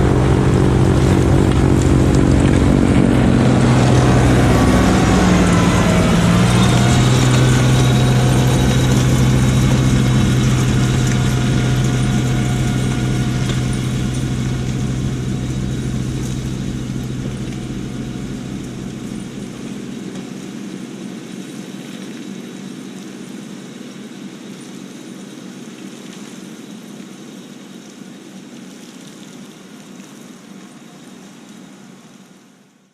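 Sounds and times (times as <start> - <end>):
tractor diesel engine running: 0.0 - 20.6.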